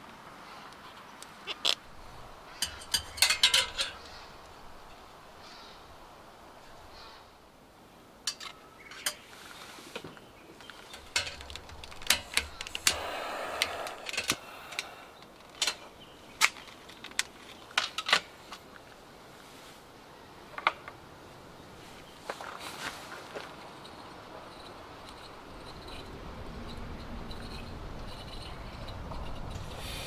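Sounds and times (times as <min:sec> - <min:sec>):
cookware and utensils clinking: 0:02.6 - 0:04.0.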